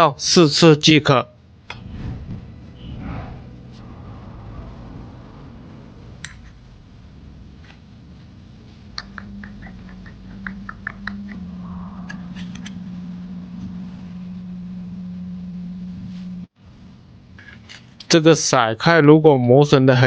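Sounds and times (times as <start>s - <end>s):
steady low hum: 0.0s - 19.6s.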